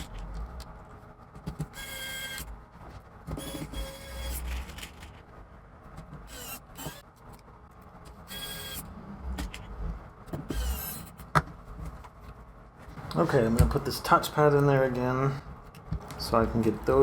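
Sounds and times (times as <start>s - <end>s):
small electric motor whirring: 1.8s - 2.5s, 3.4s - 5.1s, 6.3s - 7.0s, 8.3s - 8.9s, 10.5s - 11.2s.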